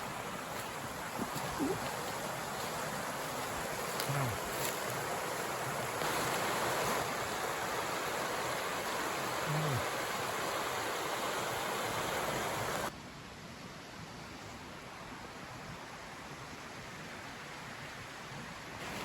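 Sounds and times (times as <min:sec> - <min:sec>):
fast-flowing river rushing: 0:00.0 - 0:12.9.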